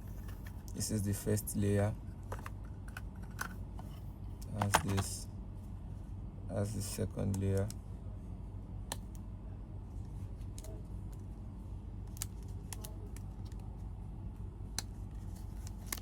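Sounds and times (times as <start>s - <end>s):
steady low hum: 0.0s - 16.0s
plastic parts clicking and tapping: 2.2s - 3.6s, 4.4s - 5.2s.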